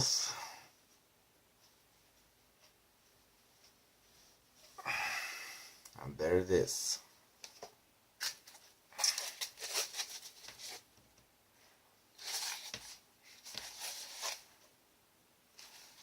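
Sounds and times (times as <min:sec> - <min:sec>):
packaging rustling and crinkling: 0:08.2 - 0:10.9, 0:12.2 - 0:14.5.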